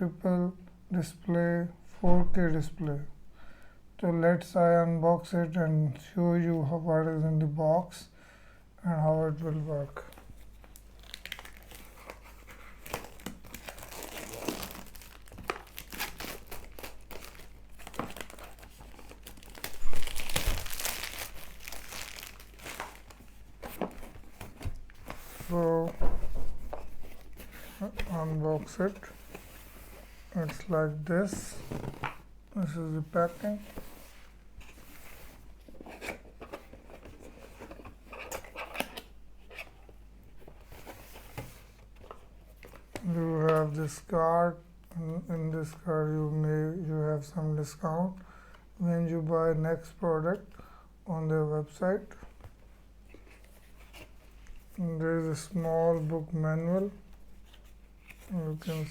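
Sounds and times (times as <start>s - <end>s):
packaging crinkling and tearing: 10.0s - 26.0s.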